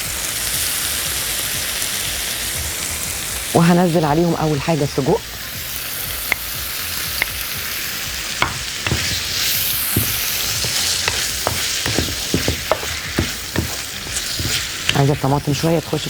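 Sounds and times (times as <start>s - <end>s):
food sizzling in a pan: 0.0s - 16.0s
utensil knocking against pan: 8.4s - 9.2s, 9.9s - 15.1s.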